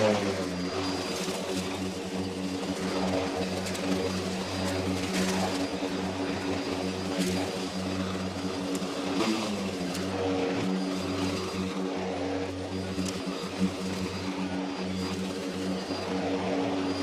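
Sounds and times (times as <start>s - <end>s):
electric lawnmower running: 0.0s - 17.0s
grass cutting ticks: 7.0s - 11.4s, 12.5s - 14.1s.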